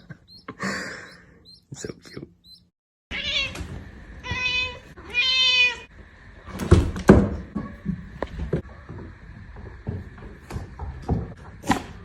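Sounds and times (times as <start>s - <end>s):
cat meowing: 3.1s - 3.6s, 4.2s - 5.9s.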